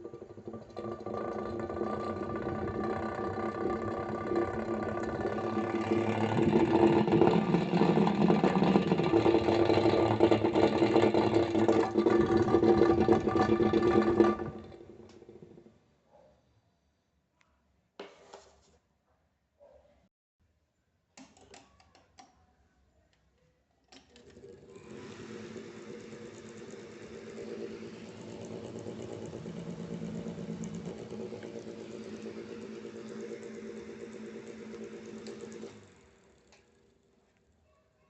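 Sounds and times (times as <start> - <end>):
electric fan whirring: 0.0 - 15.6, 24.2 - 37.1.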